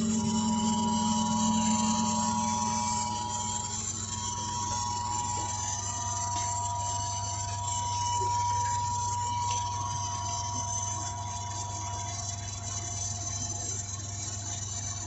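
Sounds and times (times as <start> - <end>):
high motor whine: 0.0 - 15.0
pump motor humming: 0.0 - 15.0.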